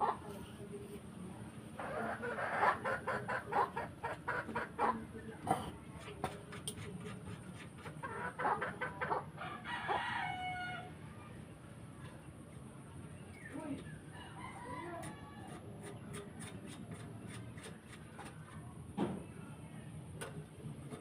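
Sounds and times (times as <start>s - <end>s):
chickens clucking: 0.0s - 0.8s, 1.7s - 19.4s
rooster crowing: 9.4s - 10.9s.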